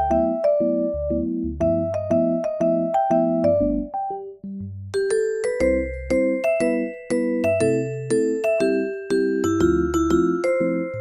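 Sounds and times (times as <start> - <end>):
light tune on bell tones: 5.0 - 11.0.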